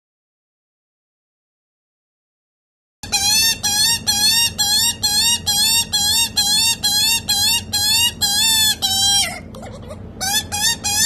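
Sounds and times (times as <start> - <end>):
young magpie begging calls: 3.0 - 11.0.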